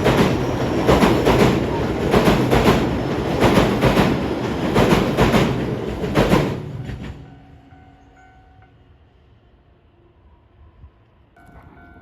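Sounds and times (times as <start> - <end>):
train wheels clacking over rail joints: 0.0 - 7.3.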